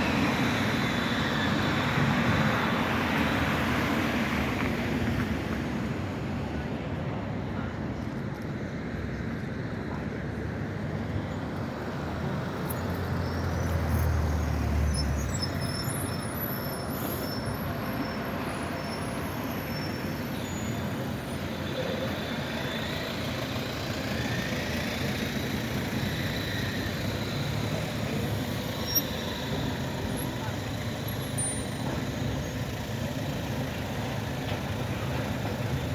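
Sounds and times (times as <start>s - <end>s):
traffic rumble: 0.0s - 35.9s
heavy vehicle low hum: 17.7s - 35.9s
thin high-pitched whines: 25.8s - 32.6s.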